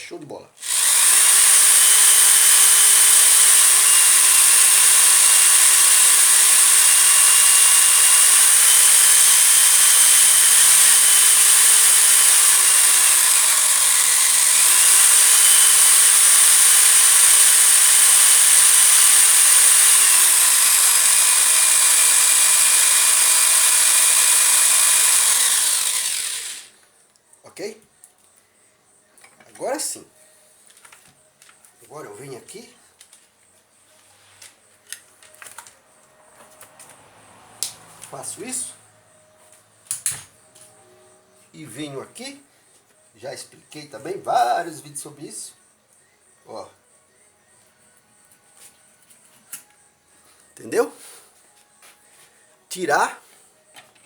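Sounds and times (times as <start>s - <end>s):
motor whine: 0.6s - 26.7s.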